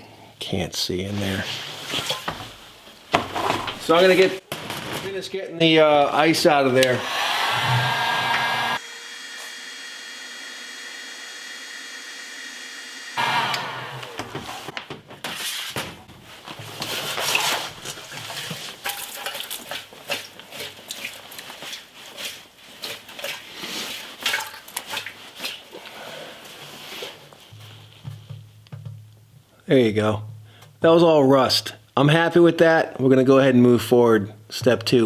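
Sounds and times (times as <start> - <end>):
steady whir: 6.8 - 14.4
slush sloshing in metal tank: 16.8 - 27.2.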